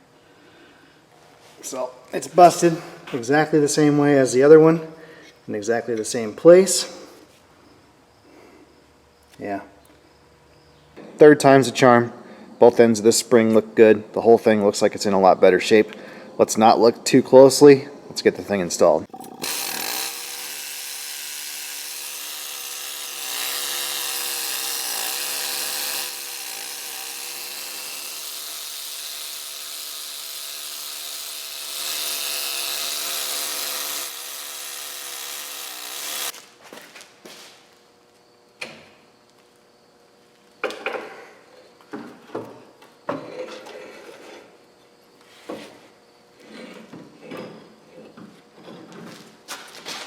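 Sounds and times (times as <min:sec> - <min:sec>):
handheld power tool running: 0:19.1 - 0:36.4.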